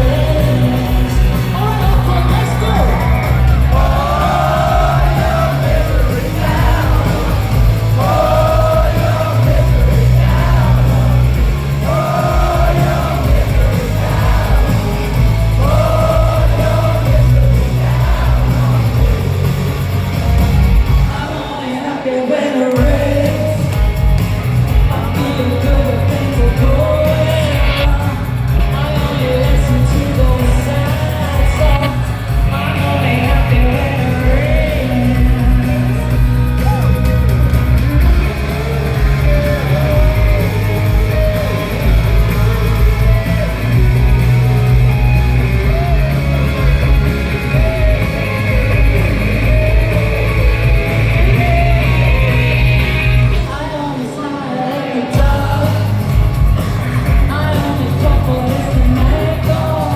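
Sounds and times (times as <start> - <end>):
live rock band playing: 0.0 - 59.9
woman singing: 24.9 - 36.2, 51.2 - 56.1, 57.1 - 59.9.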